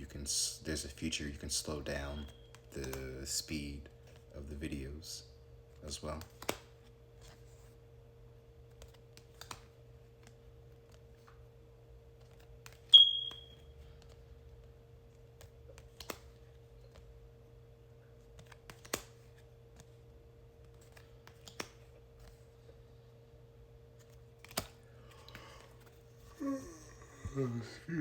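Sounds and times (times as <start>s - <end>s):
faint steady hum: 0.0s - 28.0s
cards clicking down: 2.5s - 3.2s, 5.9s - 7.4s, 8.7s - 11.4s, 15.3s - 17.1s, 18.2s - 20.0s, 20.6s - 22.4s, 24.0s - 25.9s.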